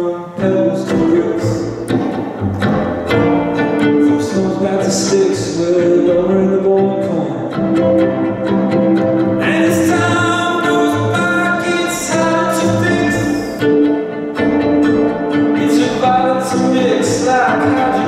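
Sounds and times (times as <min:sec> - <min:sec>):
bowed strings sustained notes: 0:00.0 - 0:18.0
short plucked notes: 0:00.0 - 0:18.0.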